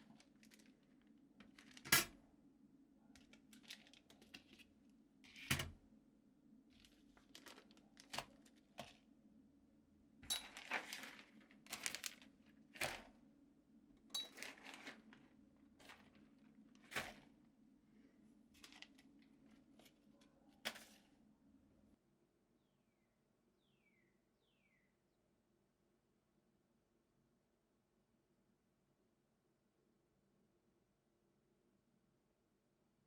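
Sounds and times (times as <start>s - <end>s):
packaging rustling: 0.0s - 1.9s, 3.2s - 4.7s, 6.7s - 9.0s, 10.3s - 13.1s, 14.2s - 17.3s, 18.6s - 20.0s.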